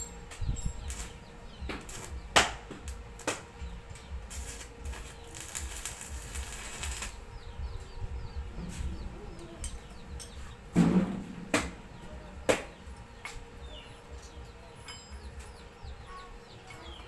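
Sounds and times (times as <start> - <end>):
birds chirping faintly: 0.0 - 17.0
hissing: 4.3 - 7.3.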